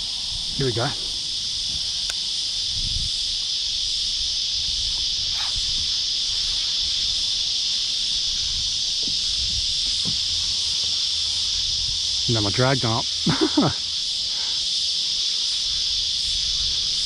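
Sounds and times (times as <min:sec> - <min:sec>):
cicadas chorus: 0:00.0 - 0:17.0.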